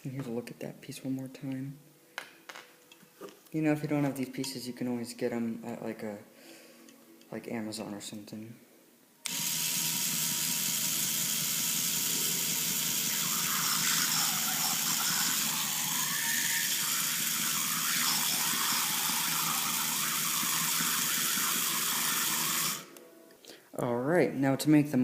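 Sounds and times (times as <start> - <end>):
electric motor and gears whirring: 9.2 - 22.9.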